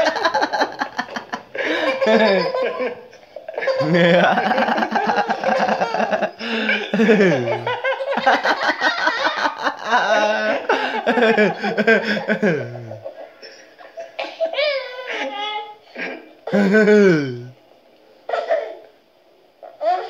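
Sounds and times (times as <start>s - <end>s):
baby laughing: 0.0s - 13.2s
people laughing: 0.0s - 14.2s, 16.5s - 17.5s.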